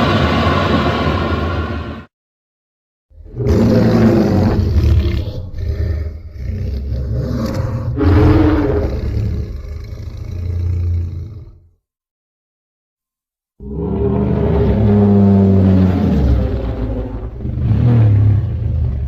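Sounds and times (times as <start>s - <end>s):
deep monster roar: 3.2s - 11.7s, 13.6s - 19.0s.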